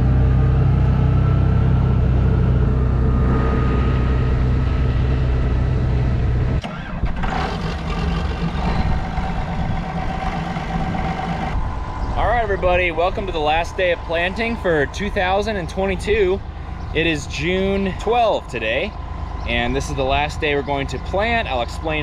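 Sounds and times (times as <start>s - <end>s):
lighter noisier engine sound: 0.0s - 22.0s
tractor engine droning: 0.0s - 22.0s.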